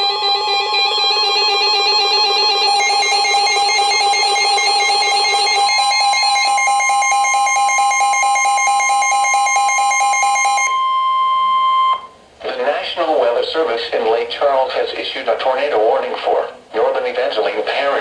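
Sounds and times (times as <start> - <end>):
rapidly pulsing electronic alarm: 0.0 - 12.1
steady high tone: 0.0 - 12.2.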